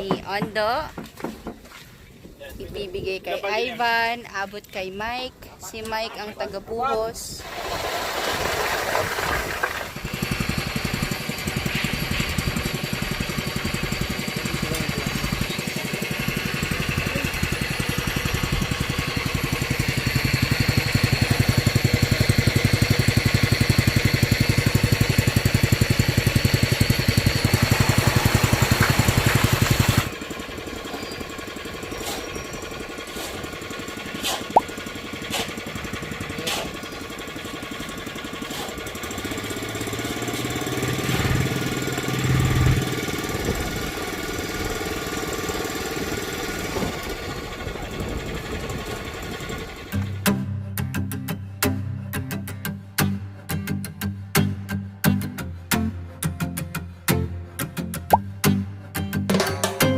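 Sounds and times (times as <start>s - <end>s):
construction site noise: 0.0s - 53.8s
small petrol engine pulsing: 7.1s - 50.4s.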